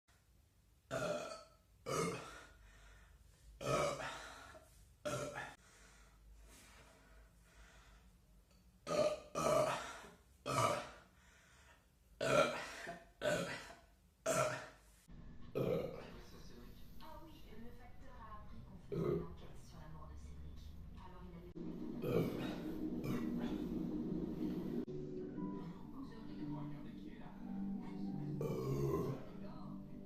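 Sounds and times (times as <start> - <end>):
boy burping: 0.9 - 2.4, 3.6 - 4.2, 5.1 - 5.5, 8.8 - 9.9, 10.5 - 11.0, 12.2 - 14.8, 15.6 - 16.1, 28.4 - 29.2.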